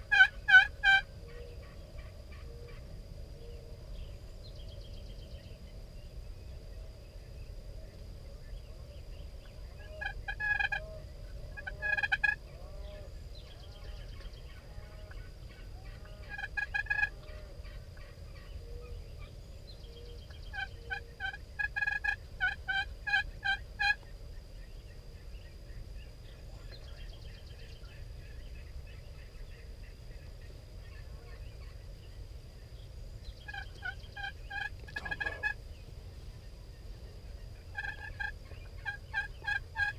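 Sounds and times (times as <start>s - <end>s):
turkey calling: 0.0s - 2.8s, 9.7s - 10.9s, 11.5s - 12.5s, 14.4s - 18.5s, 20.4s - 24.0s, 33.4s - 35.6s, 37.6s - 39.9s.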